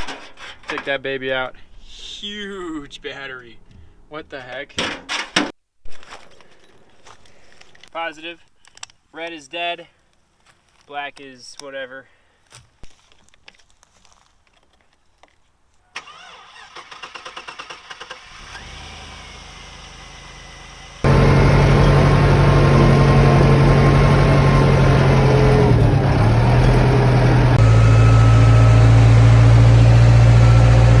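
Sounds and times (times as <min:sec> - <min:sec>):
engine cranking and starting: 0:16.0 - 0:19.4, 0:21.0 - 0:27.8
loud engine running: 0:19.0 - 0:31.0.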